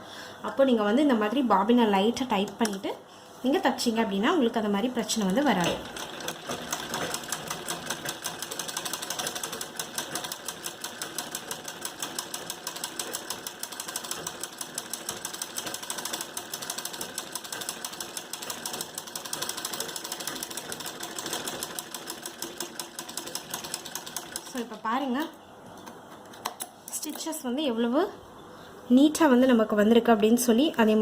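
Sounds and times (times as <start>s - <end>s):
sewing machine running: 5.2s - 24.8s.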